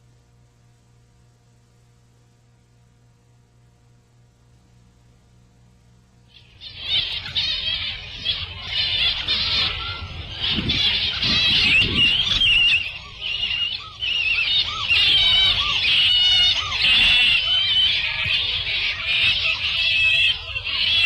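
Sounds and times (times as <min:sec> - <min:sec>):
chirping bird and animal calls: 0:06.3 - 0:21.0
lower animal cries: 0:06.3 - 0:21.0.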